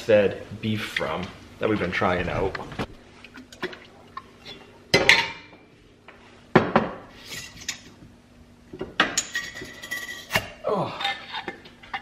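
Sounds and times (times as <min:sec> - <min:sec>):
glass jars and dishes clinking: 0:09.0 - 0:10.5.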